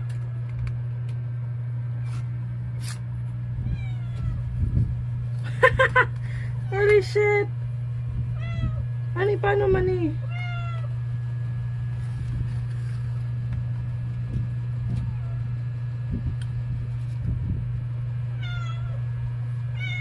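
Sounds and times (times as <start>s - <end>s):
steady low hum: 0.0s - 20.0s
cat meowing: 3.6s - 4.5s, 8.4s - 8.9s, 10.2s - 10.9s, 18.4s - 19.0s, 19.7s - 20.0s.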